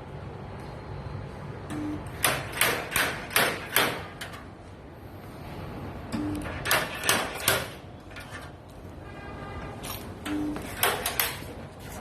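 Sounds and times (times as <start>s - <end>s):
spot welder sharp bursts: 1.9s - 4.2s.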